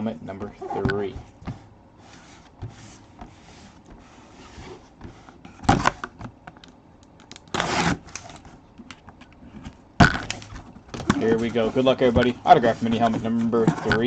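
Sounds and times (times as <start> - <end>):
cardboard and packaging rustling: 9.4 - 14.0
scraping rustle: 11.0 - 14.0.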